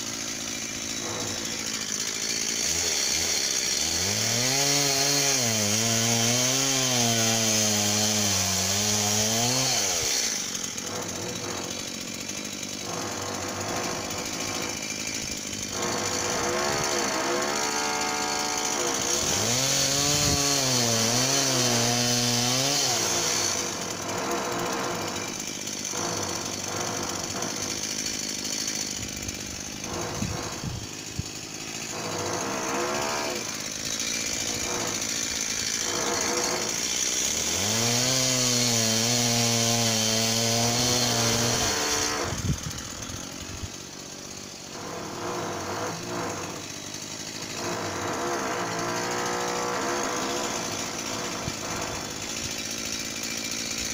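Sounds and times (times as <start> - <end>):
chainsaw revving: 0.0 - 53.9.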